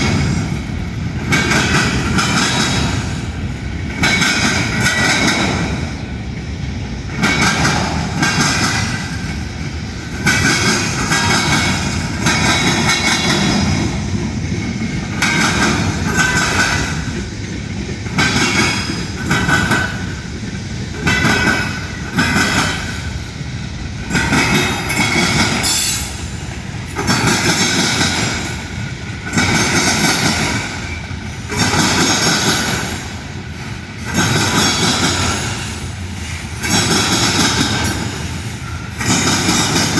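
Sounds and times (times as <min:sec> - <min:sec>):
train railcars rumbling past: 0:00.0 - 0:39.9.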